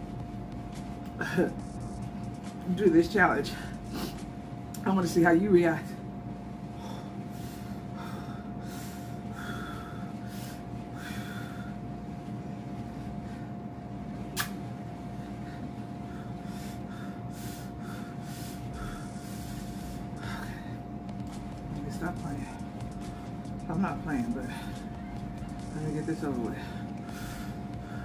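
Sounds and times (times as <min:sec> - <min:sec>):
steady hum: 0:00.0 - 0:28.0
person sharp breaths and sniffs: 0:03.5 - 0:04.3, 0:16.2 - 0:21.5
sharp click: 0:14.4 - 0:14.6.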